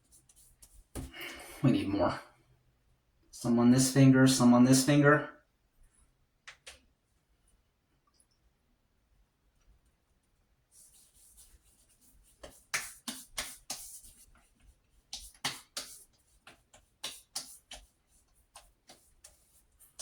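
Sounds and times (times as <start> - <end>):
fingertips rubbing balm on skin: 10.8 - 20.0.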